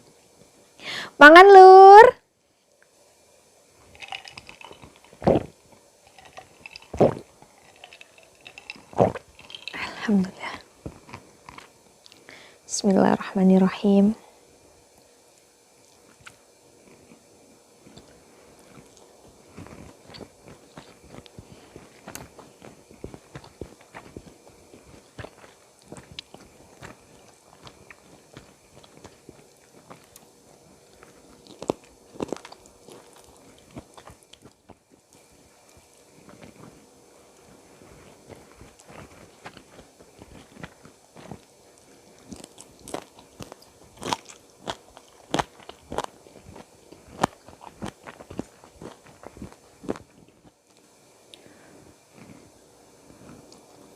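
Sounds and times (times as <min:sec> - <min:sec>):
sharp food crunches: 0:03.9 - 0:05.5, 0:06.1 - 0:10.0, 0:30.9 - 0:34.8, 0:42.2 - 0:50.2
wet mouth chewing and smacking: 0:03.9 - 0:05.5, 0:06.1 - 0:09.8, 0:17.9 - 0:36.7, 0:38.4 - 0:50.4.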